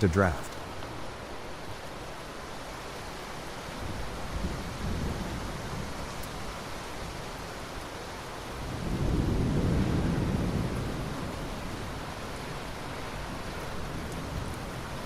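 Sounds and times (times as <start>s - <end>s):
steady rainfall: 0.0s - 15.0s
low thunder rolling: 8.6s - 11.8s.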